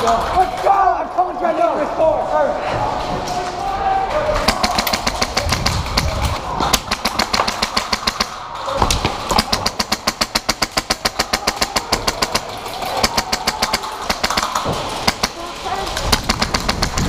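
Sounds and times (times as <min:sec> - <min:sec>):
airsoft guns firing full auto: 0:04.4 - 0:08.4, 0:09.0 - 0:17.0.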